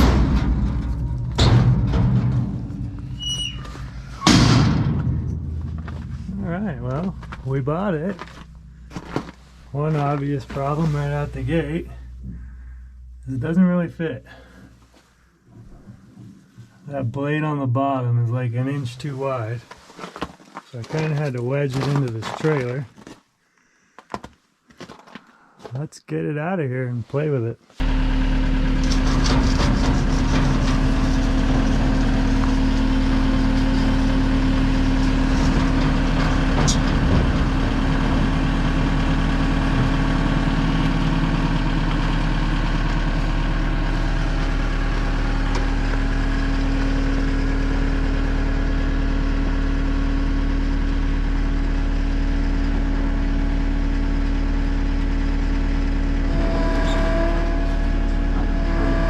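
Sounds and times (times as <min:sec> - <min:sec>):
diesel engine running: 0:00.0 - 0:15.9, 0:27.8 - 0:59.0.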